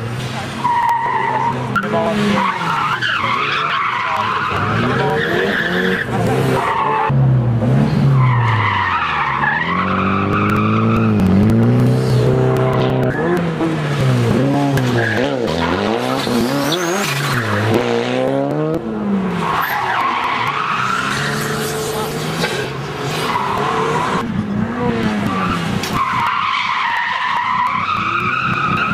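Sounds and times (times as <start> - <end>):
engine revving: 9.3 - 19.2.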